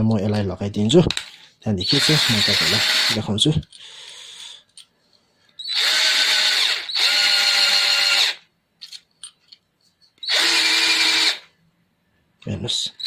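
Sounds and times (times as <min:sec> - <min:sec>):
cordless drill motor running: 0:01.8 - 0:03.3, 0:05.6 - 0:08.4, 0:10.2 - 0:11.5.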